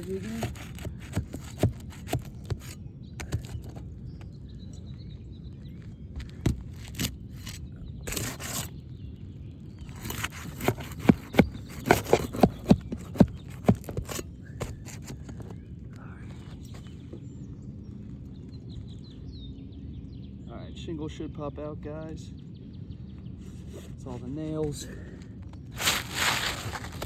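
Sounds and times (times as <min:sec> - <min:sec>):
tool scraping on roof shingle: 0:00.0 - 0:04.2, 0:06.2 - 0:08.8, 0:09.8 - 0:15.6, 0:23.5 - 0:27.0.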